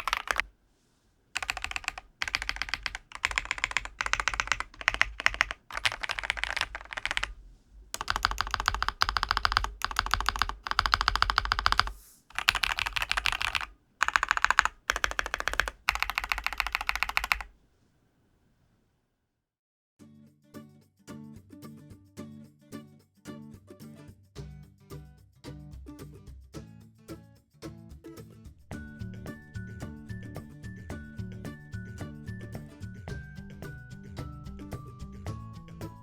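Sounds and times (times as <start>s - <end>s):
mechanical keyboard typing: 0.0s - 0.5s, 1.4s - 17.6s.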